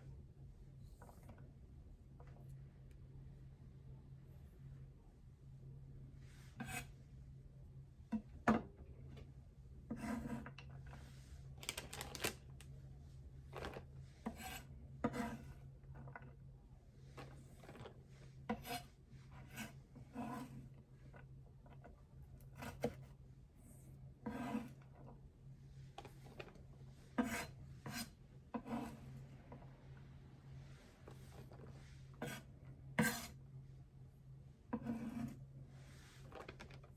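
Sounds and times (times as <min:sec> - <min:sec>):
knife cutting celery on board: 0:24.2 - 0:24.7, 0:33.0 - 0:33.4, 0:34.8 - 0:35.4.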